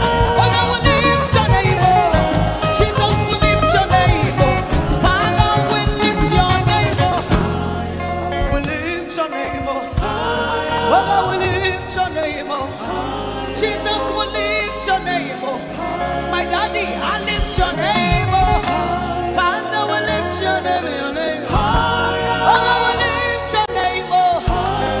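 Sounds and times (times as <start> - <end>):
drums: 0.0 - 12.4, 15.7 - 20.4, 21.2 - 25.0
full band playing: 0.0 - 25.0
gospel singing: 0.0 - 25.0.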